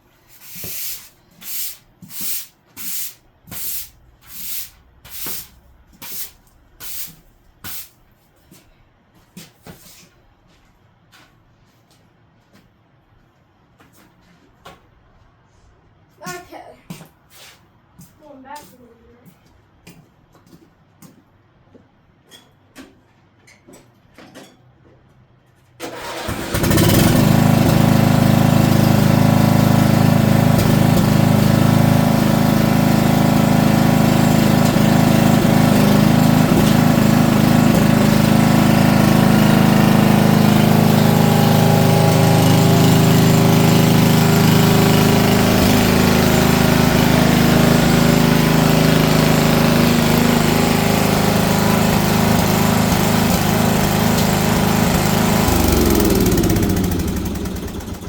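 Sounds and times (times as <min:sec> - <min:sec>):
small gas engine running: 0:25.8 - 0:58.0.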